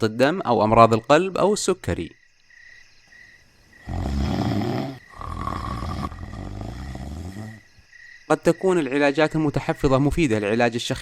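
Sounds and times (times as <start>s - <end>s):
person snoring: 3.8s - 7.7s.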